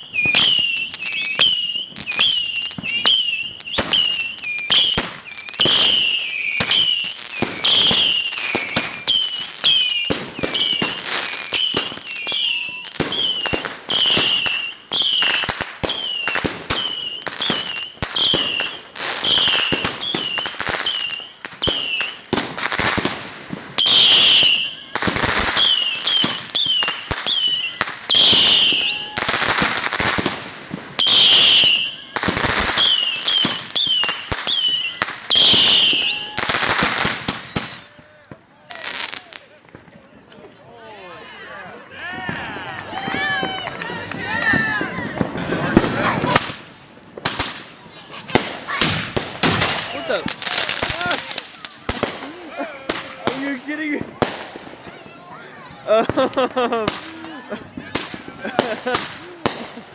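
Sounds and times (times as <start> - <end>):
firework whistles: 0.0 - 39.4
firework pops and cracks: 0.0 - 40.4, 42.0 - 59.9.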